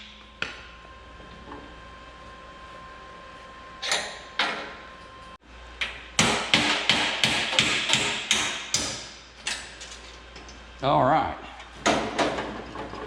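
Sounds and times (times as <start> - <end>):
hammer striking metal: 6.2 - 9.2.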